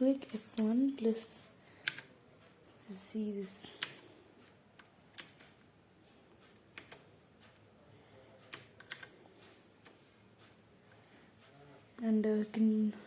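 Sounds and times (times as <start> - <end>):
mechanical keyboard clicks: 1.8 - 2.1, 4.8 - 5.5, 6.5 - 7.0, 8.5 - 9.1.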